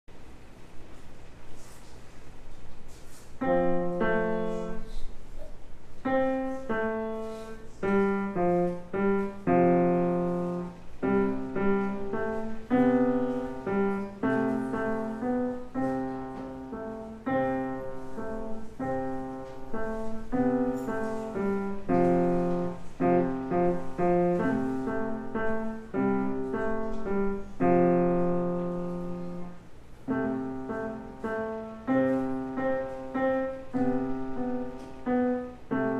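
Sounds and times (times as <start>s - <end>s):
solo piano piece: 2.9s - 35.9s.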